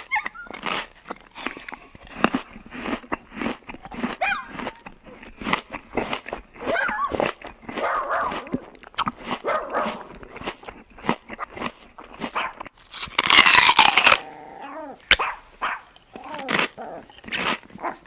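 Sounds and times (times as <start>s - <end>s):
dog whining and barking: 0.0s - 0.7s, 4.2s - 5.2s, 6.4s - 8.8s, 9.4s - 10.1s, 14.2s - 17.1s, 17.8s - 18.0s
sharp chewing clicks: 0.0s - 18.0s.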